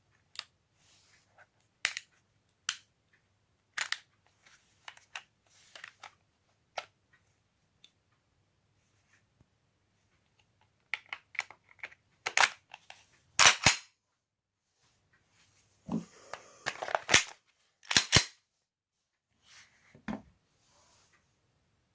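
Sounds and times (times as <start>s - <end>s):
pistol metallic clicks and clacks: 13.4s - 13.9s, 17.0s - 18.4s.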